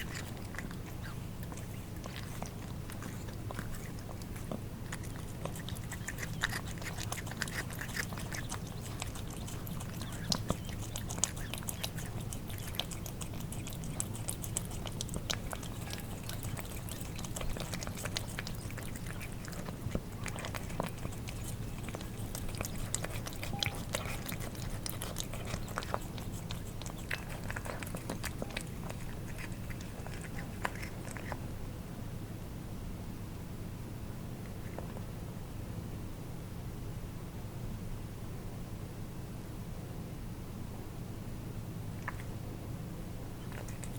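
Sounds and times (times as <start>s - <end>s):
cats eating wet food: 0.0s - 31.8s, 34.4s - 35.2s, 41.8s - 43.9s
steady low hum: 0.0s - 43.9s.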